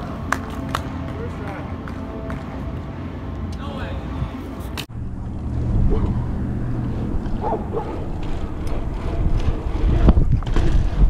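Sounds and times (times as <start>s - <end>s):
wind buffeting microphone: 4.1s - 11.0s.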